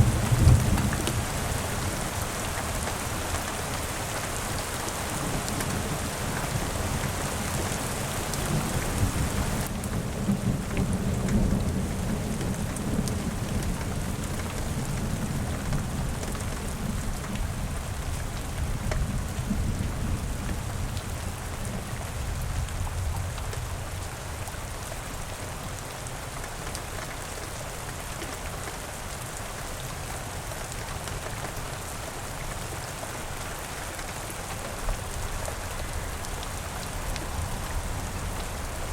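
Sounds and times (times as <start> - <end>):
low rumble of thunder: 0.0 - 2.9, 5.0 - 24.4
rain falling: 0.0 - 38.9.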